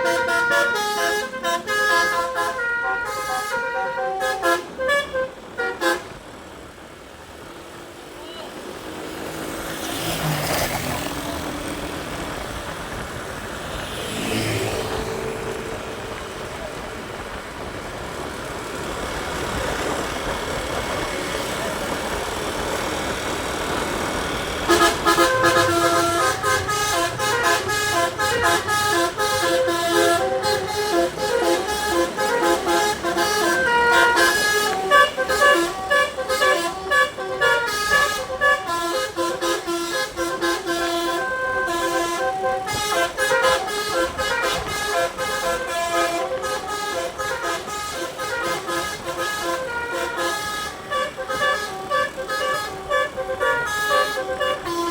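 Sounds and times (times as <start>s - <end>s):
musical air horn: 0.0s - 6.4s, 24.3s - 54.9s
road and engine noise: 0.0s - 54.9s.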